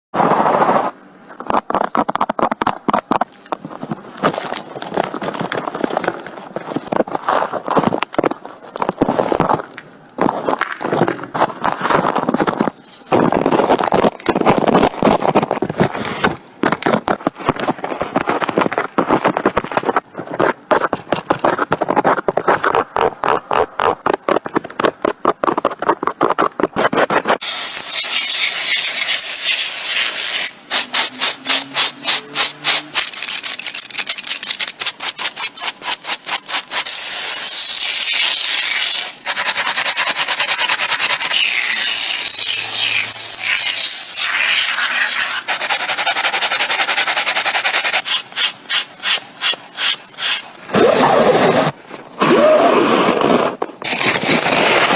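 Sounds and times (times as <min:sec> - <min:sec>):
sanding a surface: 0:26.8 - 0:50.5.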